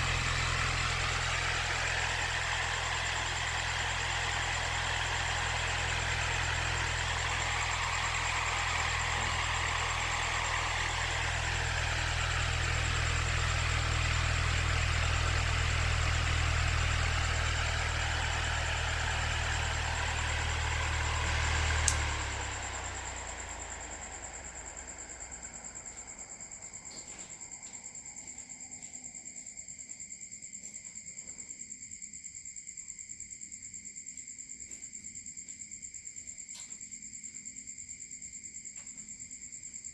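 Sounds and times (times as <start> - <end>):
small motor spinning a fan: 0.0 - 29.4
faint high steady whine: 0.0 - 30.4.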